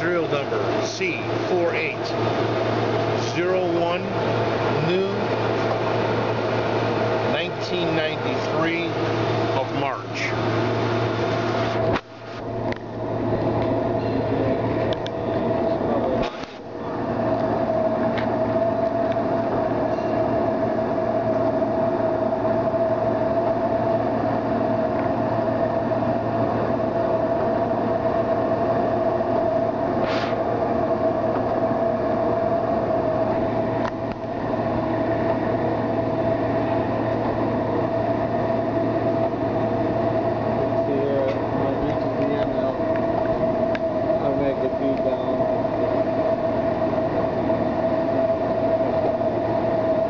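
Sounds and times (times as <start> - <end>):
surface grinder humming and whining: 0.0 - 50.0
brief hiss: 30.0 - 30.4.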